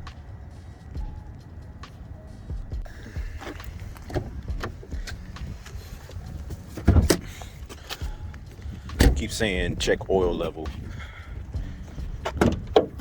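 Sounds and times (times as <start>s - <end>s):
low rumble: 0.0s - 12.8s
loud thump: 8.9s - 9.3s.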